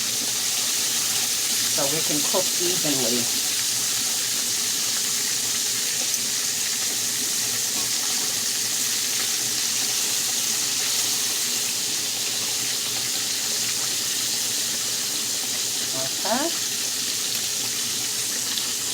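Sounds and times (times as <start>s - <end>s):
meat sizzling in a frying pan: 0.0s - 18.9s.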